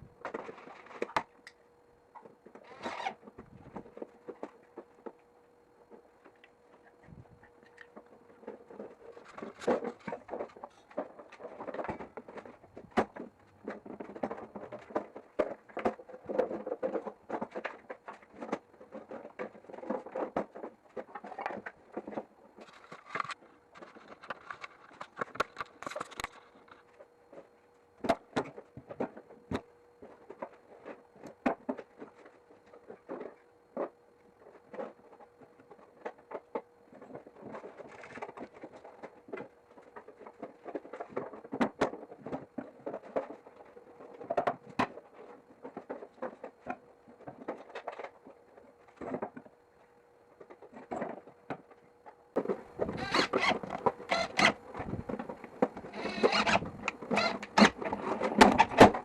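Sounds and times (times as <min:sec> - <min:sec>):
faint steady hum: 0:00.0 - 0:59.0
knocks clicks and rustling: 0:50.4 - 0:59.0.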